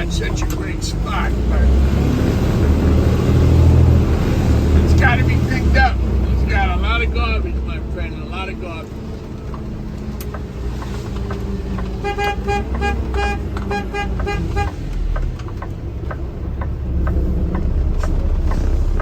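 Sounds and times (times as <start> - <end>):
truck engine running: 0.0 - 19.0
vehicle horn short beeps: 12.0 - 14.8.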